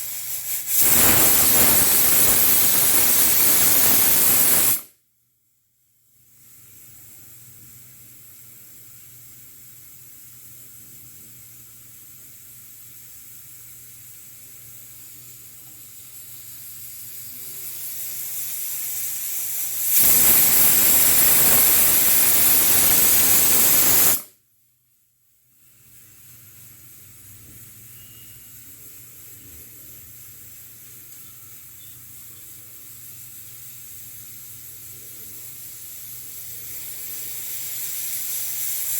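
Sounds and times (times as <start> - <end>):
pressure cooker steam hissing: 0.0 - 4.9, 6.4 - 24.3, 25.8 - 38.9
pressure cooker whistle: 0.0 - 4.9, 17.6 - 24.3, 27.7 - 28.8, 31.6 - 34.0.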